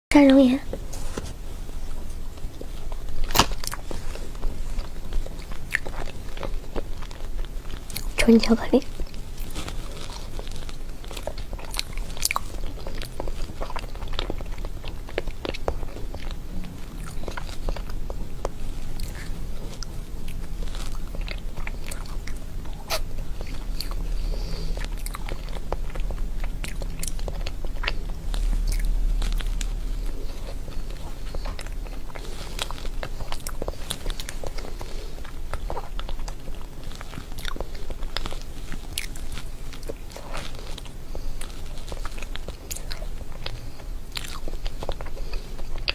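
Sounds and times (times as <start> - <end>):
chocolate biting and chewing: 0.8 - 45.9
chocolate snapping and crunching: 2.4 - 8.2.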